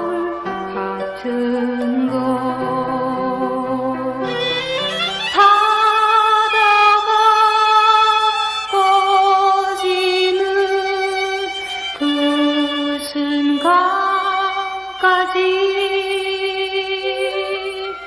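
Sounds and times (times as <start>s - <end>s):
violin melody: 0.0s - 18.0s
woman singing: 0.0s - 18.0s.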